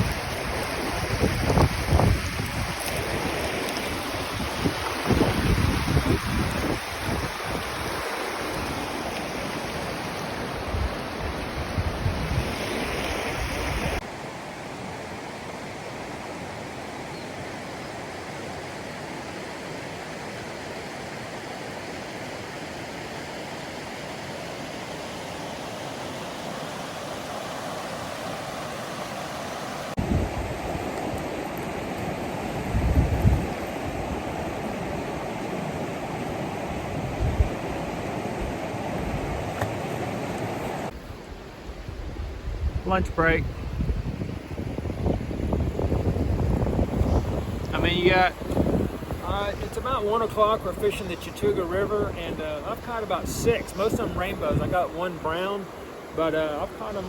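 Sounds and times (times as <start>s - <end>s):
wind on microphone: 0.0s - 9.1s, 9.7s - 14.0s, 30.0s - 54.9s
river rapids rushing: 19.8s - 41.0s.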